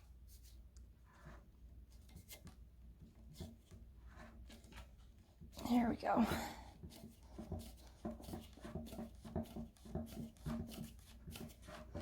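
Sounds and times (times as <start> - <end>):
plastic pole rubbing squeaks: 6.8 - 12.0.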